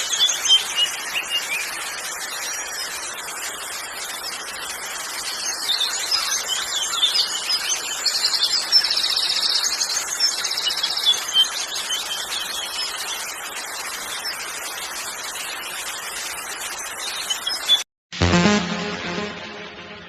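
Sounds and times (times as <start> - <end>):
rushing stream water: 0.0 - 17.8
birds chirping and trilling: 5.2 - 13.3.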